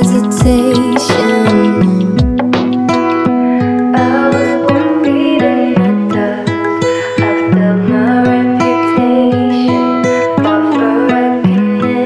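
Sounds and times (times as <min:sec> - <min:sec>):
music with deep beat: 0:00.0 - 0:03.9.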